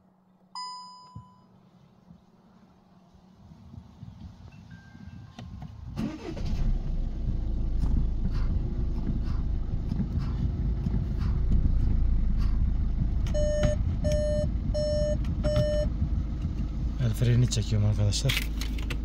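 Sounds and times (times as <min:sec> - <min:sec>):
car engine idling: 0:05.4 - 0:19.0
short electronic beeps: 0:13.4 - 0:15.9.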